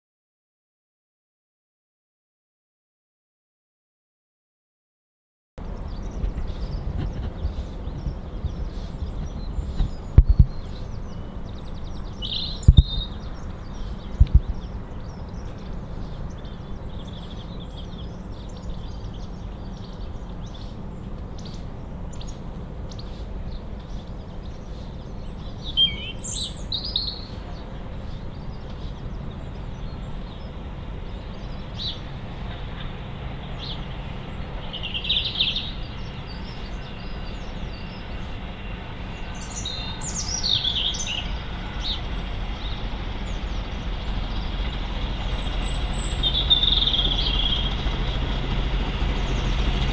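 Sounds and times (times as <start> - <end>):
small birds chirping: 5.6 - 49.9
low background rumble: 27.4 - 49.9.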